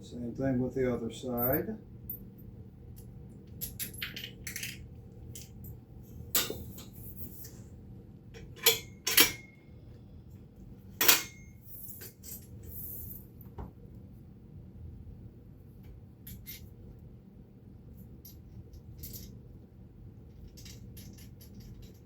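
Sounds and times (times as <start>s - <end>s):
metal hardware clinking: 3.5s - 6.9s, 8.4s - 9.6s, 11.0s - 13.1s.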